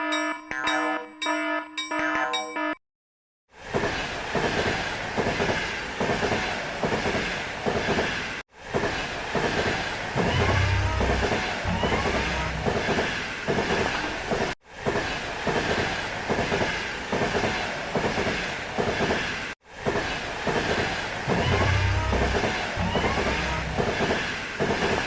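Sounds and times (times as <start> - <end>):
wheel squeal: 10.2 - 14.0, 20.6 - 25.0.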